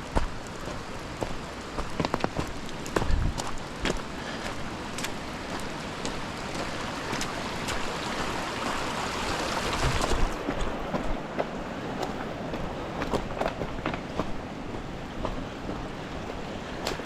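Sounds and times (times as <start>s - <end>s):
rushing water: 0.0s - 17.0s
steady rain: 0.0s - 17.0s.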